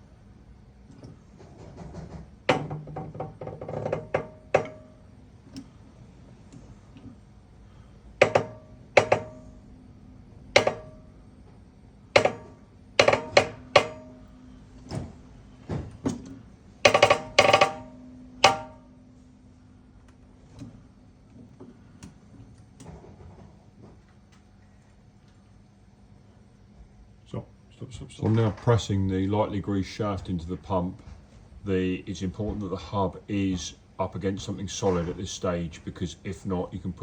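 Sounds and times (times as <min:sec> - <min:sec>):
metal knocks with ringing: 0:02.5 - 0:05.0, 0:08.2 - 0:09.6, 0:10.6 - 0:11.1, 0:12.2 - 0:14.3, 0:16.8 - 0:18.9.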